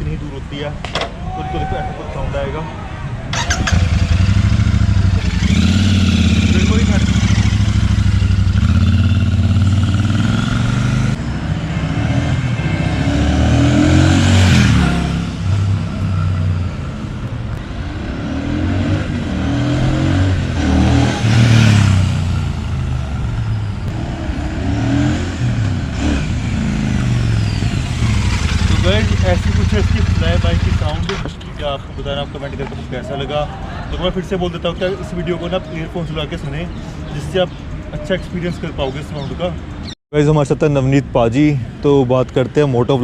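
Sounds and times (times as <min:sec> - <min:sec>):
motorcycle riding past: 0:03.3 - 0:16.7, 0:17.8 - 0:31.2.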